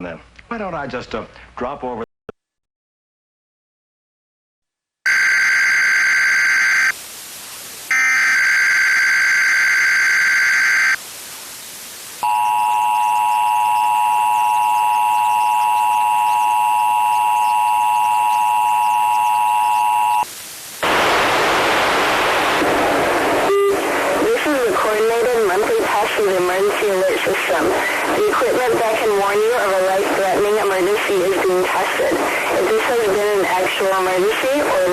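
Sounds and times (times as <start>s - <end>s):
two-tone attention signal: 5.1s - 6.9s, 7.9s - 11.0s, 12.2s - 20.3s, 23.4s - 25.0s
digital header data tone: 5.1s - 7.0s, 7.9s - 11.0s, 12.2s - 20.3s
broad steady hiss: 5.1s - 34.9s.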